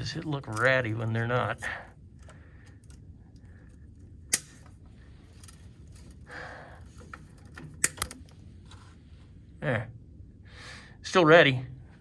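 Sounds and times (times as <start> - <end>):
cable rustling: 0.0 - 9.0.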